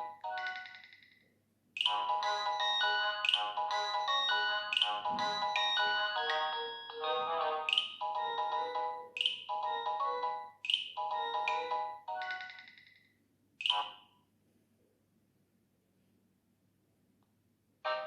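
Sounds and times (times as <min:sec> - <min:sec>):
polyphonic ringtone melody: 0:00.0 - 0:01.1, 0:01.8 - 0:12.8.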